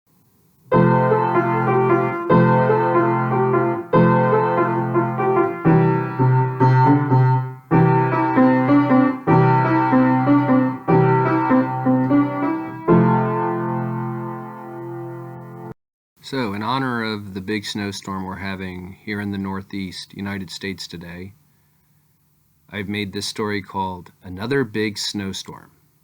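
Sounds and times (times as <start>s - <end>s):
keyboard melody over chords: 0.7s - 15.8s.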